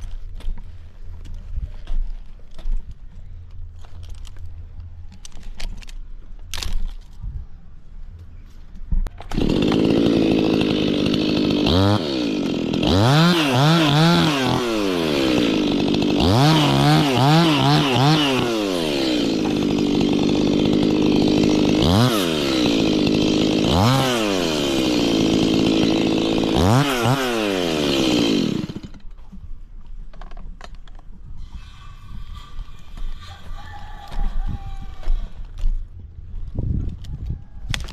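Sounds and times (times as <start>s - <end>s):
chainsaw cutting: 9.2s - 29.2s.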